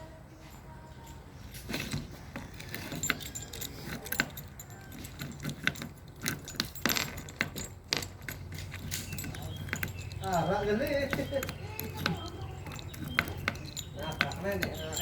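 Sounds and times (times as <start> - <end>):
small metal objects clicking and jingling: 0.4 - 15.0.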